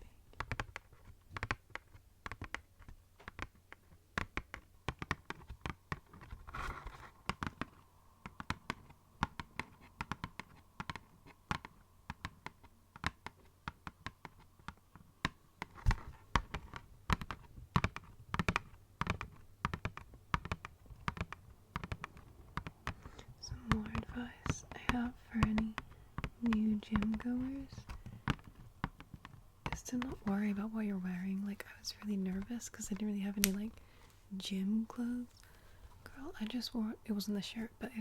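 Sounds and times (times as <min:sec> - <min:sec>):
fingernails tapping cardboard box: 0:00.4 - 0:30.2.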